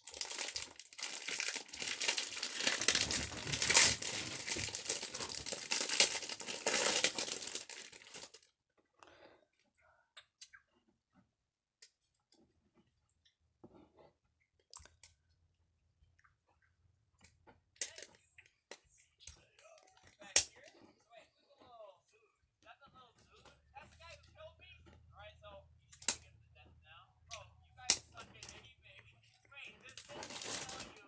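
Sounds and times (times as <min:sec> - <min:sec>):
packaging crinkling: 0:00.0 - 0:08.5, 0:29.9 - 0:31.0.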